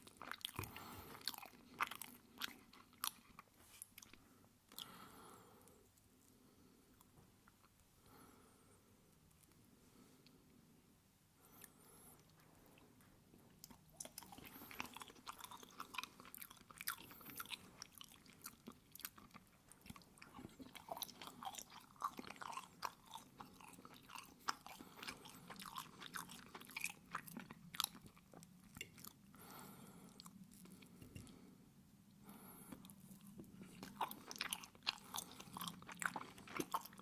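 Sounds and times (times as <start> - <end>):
close chewing with wet clicks: 0.0 - 4.8, 13.6 - 29.3, 32.7 - 37.0.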